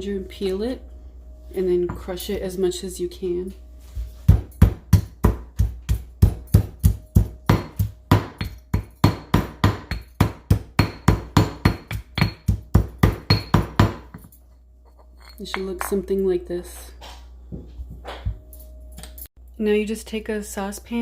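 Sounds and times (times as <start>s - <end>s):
ginger being pounded: 4.3s - 14.1s.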